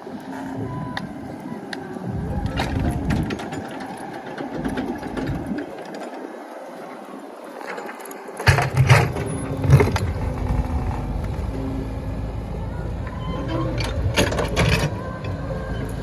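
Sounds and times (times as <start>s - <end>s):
excavator mechanical whir: 0.2s - 6.0s, 8.4s - 16.0s.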